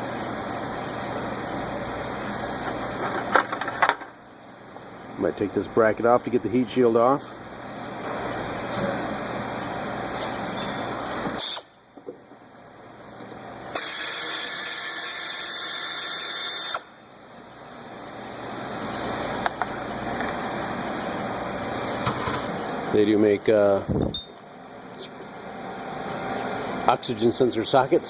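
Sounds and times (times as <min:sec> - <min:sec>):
steady background noise: 0:00.0 - 0:13.8.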